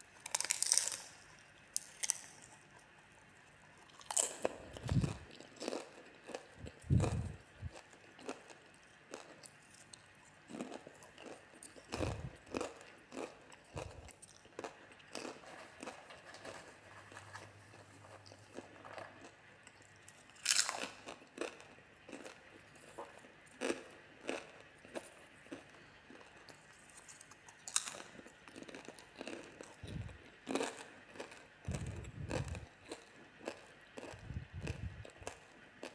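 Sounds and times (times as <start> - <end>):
popcorn being crunched: 0.2 - 2.6, 3.9 - 9.4, 10.5 - 19.4, 20.3 - 22.4.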